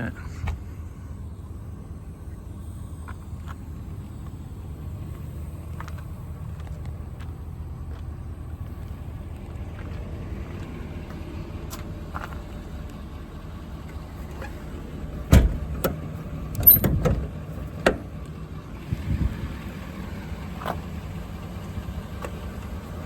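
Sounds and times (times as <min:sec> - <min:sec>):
diesel engine idling: 0:00.0 - 0:23.0
loud engine knocks and clatter: 0:05.0 - 0:23.0.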